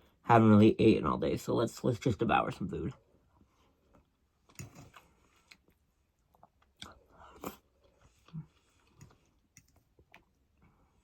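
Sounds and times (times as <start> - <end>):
man chewing: 3.9 - 11.0.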